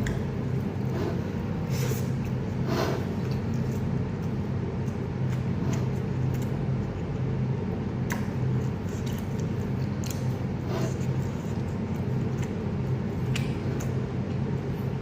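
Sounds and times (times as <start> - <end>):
person chewing clicks: 0.0 - 0.4, 8.0 - 14.4
steady low hum: 0.0 - 15.0.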